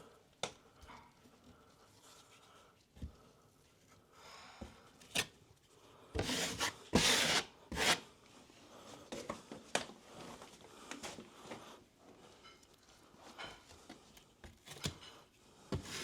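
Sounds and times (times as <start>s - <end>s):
drywall knife scraping compound: 6.2s - 8.1s, 14.7s - 16.0s.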